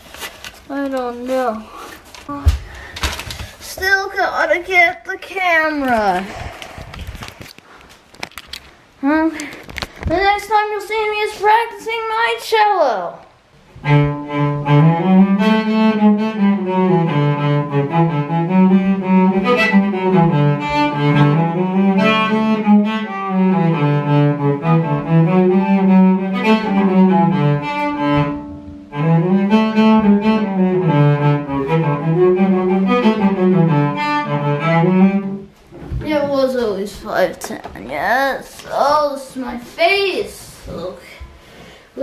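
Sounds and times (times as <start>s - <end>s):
bowed cello melody: 13.7s - 35.5s.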